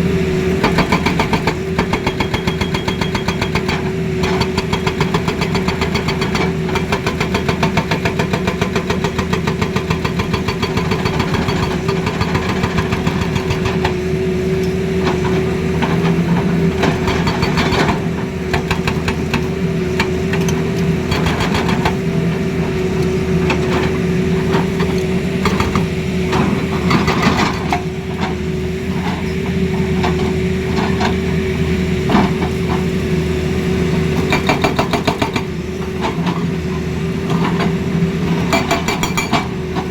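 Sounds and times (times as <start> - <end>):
excavator engine and hydraulics whine: 0.0 - 39.9
excavator knocking: 0.6 - 14.1, 15.1 - 22.0, 24.5 - 27.8, 34.2 - 35.5.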